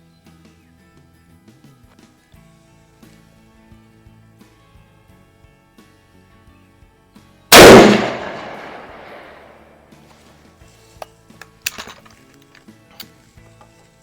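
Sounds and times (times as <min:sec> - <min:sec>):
rifle shot echoing: 0:07.5 - 0:09.8.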